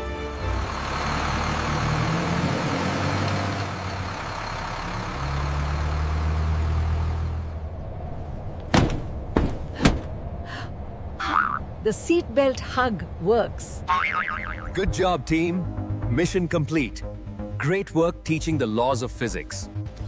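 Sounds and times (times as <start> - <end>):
cartoon bus engine drone: 0.0 - 14.8.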